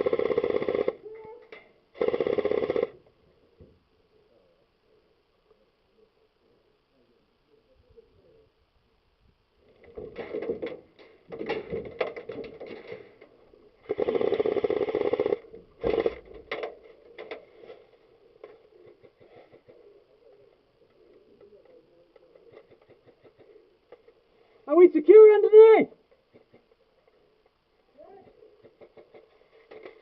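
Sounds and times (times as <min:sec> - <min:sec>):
airsoft guns firing bursts: 0:00.0 - 0:01.0, 0:02.0 - 0:03.0, 0:13.8 - 0:16.2.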